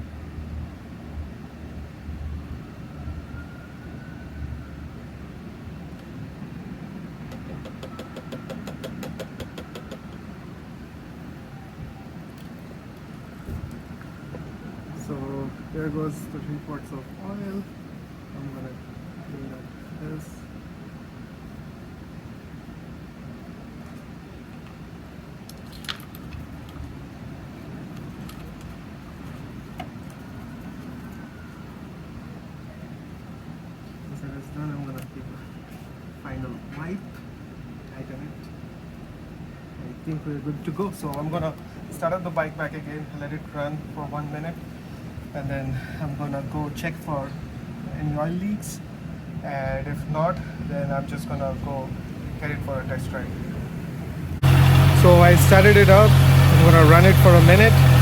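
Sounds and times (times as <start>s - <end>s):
oil pouring rush: 54.4s - 58.0s.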